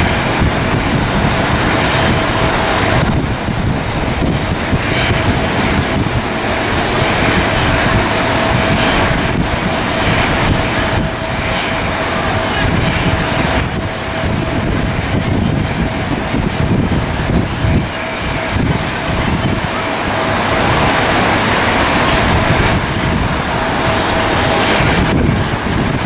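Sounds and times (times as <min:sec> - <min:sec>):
jet engines rumbling: 0:00.0 - 0:26.0
wind buffeting the microphone: 0:00.0 - 0:26.0.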